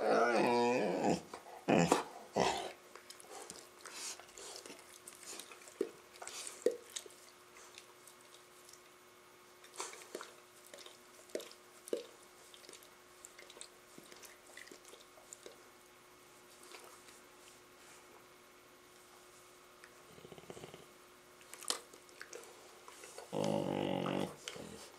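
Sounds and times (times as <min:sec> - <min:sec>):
dogs mouthing and play-biting: 0:00.0 - 0:09.0, 0:09.6 - 0:15.7, 0:21.4 - 0:24.9
faint steady hum: 0:00.0 - 0:24.9.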